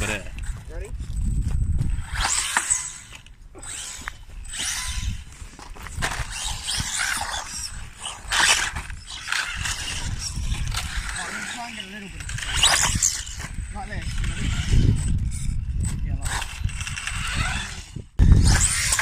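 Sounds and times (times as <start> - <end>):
electric rc cars whirring: 0.0 - 19.0.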